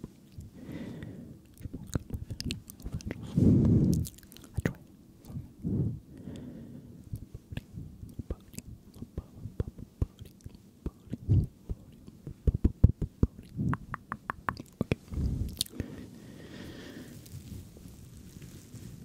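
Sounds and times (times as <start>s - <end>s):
soft breathy whispers: 0.3s - 13.9s, 14.6s - 19.0s
wet tongue and lip clicks: 1.4s - 3.3s, 3.9s - 5.4s, 7.5s - 15.8s.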